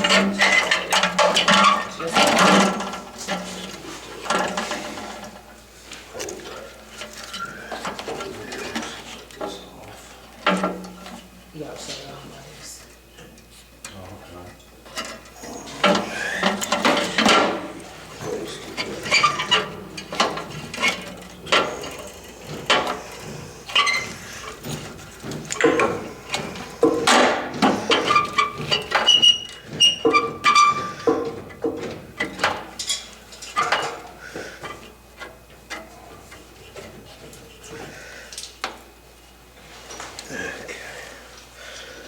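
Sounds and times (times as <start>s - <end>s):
metal tools clanking: 0.0s - 5.4s, 14.9s - 37.0s
short squeaks: 18.8s - 19.7s.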